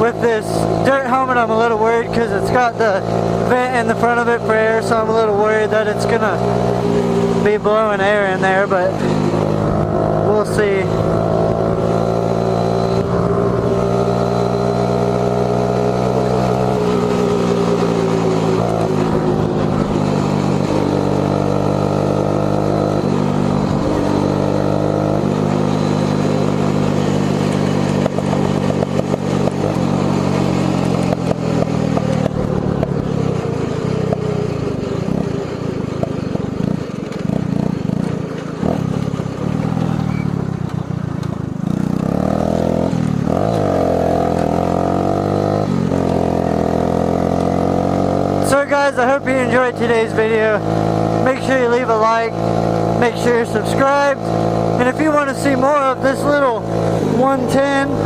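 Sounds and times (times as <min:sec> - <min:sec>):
small engine running: 0:41.7 - 0:58.0.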